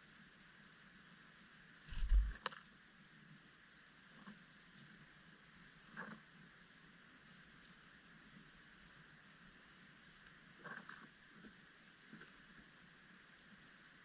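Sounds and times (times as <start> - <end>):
faint steady hiss: 0.0 - 14.0
dull low thump: 1.9 - 2.4.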